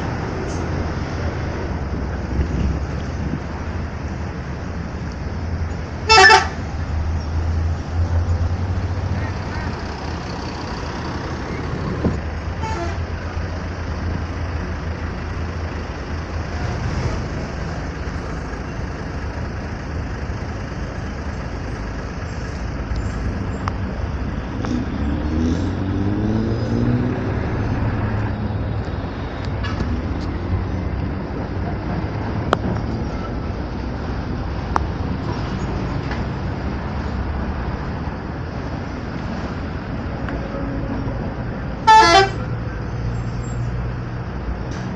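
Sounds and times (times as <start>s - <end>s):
traffic rumble: 0.0s - 44.9s
vehicle accelerating past: 24.3s - 28.6s.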